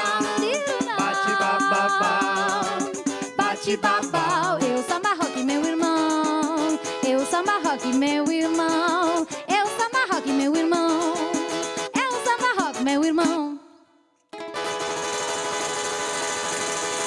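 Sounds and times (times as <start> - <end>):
samba band playing: 0.0 - 5.8
high plucked string melody: 0.0 - 13.2, 14.4 - 17.0.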